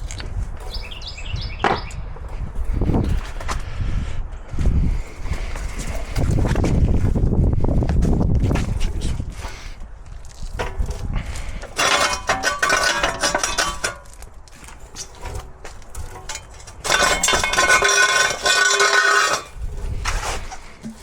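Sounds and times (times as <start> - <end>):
metal tools clinking: 11.6 - 19.6.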